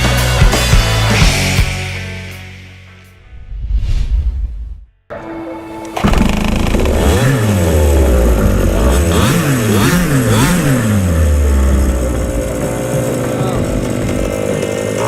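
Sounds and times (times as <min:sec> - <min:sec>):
small two-stroke engine revving: 0:06.0 - 0:15.0.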